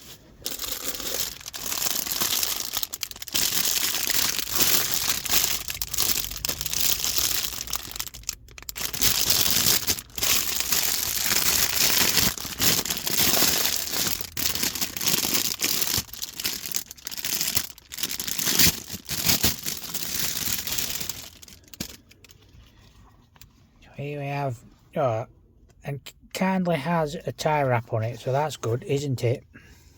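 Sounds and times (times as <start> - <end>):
plastic packaging crinkling: 0.0 - 22.5.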